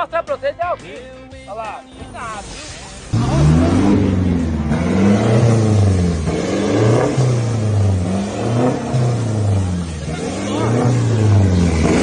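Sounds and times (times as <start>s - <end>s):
diesel truck engine revving: 2.4s - 12.0s.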